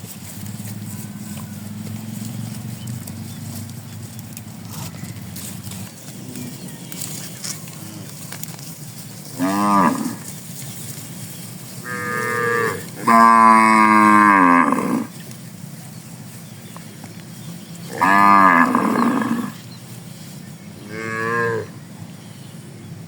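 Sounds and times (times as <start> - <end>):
cattle mooing: 9.4 - 10.3, 11.8 - 15.1, 17.9 - 19.6, 20.8 - 21.8.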